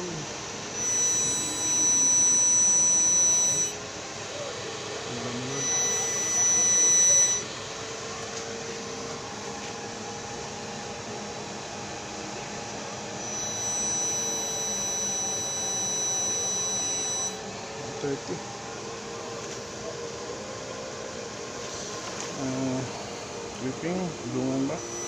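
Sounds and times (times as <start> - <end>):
high-pitched test tone: 0.0 - 3.8, 4.4 - 7.5, 13.1 - 18.4, 23.6 - 25.0
steady background hum: 0.0 - 25.0.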